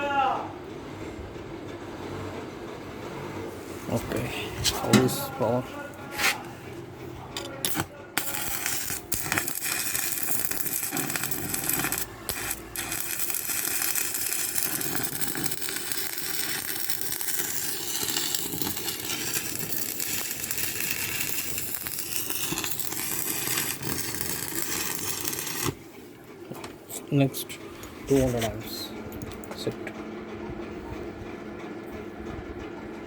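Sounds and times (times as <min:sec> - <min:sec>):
electric arc welding: 0:07.6 - 0:25.8.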